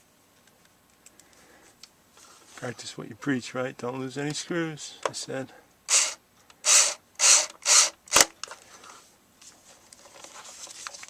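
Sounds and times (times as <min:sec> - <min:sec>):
scraping rustles: 0:08.5 - 0:11.0.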